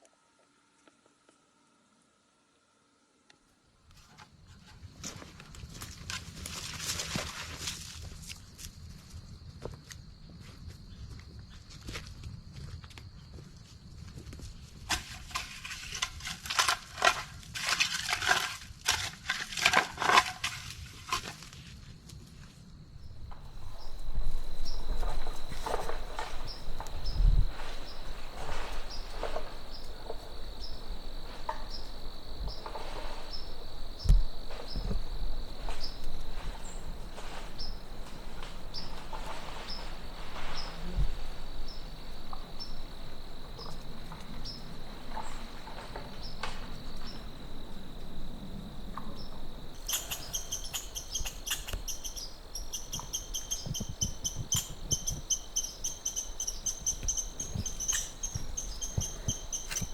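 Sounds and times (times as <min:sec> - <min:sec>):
crickets chirping: 0:04.0 - 0:59.9
dull low thumps: 0:23.0 - 0:39.2
pulsing insect trill: 0:23.0 - 0:59.9.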